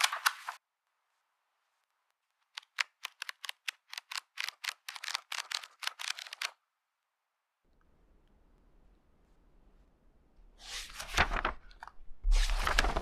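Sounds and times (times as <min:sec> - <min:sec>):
paper pages rustling: 0:00.0 - 0:00.6, 0:01.7 - 0:06.6, 0:10.5 - 0:13.0.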